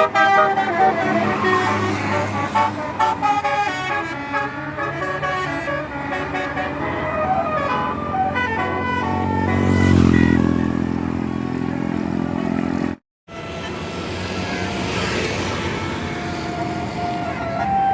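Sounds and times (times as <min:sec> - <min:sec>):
multi-tone bus air horn tune: 0:00.0 - 0:10.7.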